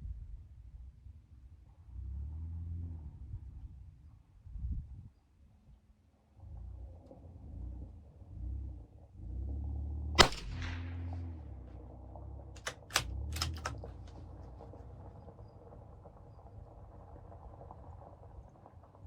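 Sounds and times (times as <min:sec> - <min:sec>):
rifle shot with echo: 0:10.2 - 0:11.4, 0:12.6 - 0:13.8
rifle bolt metallic clicks: 0:12.6 - 0:13.9.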